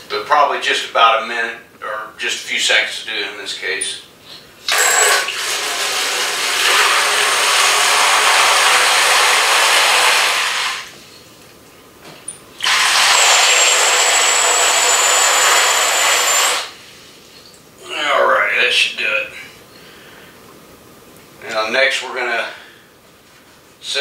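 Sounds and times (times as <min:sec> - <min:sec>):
water rushing from supply line: 0:05.2 - 0:10.9.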